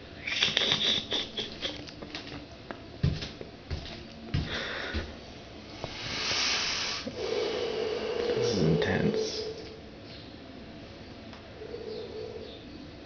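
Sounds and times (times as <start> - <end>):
person chewing with clicks: 0.3 - 2.4.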